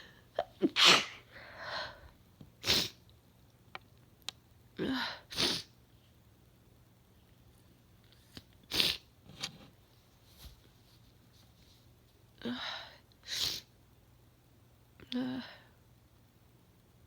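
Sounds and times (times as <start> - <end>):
woman sneezing: 0.6 - 1.3, 5.0 - 5.7.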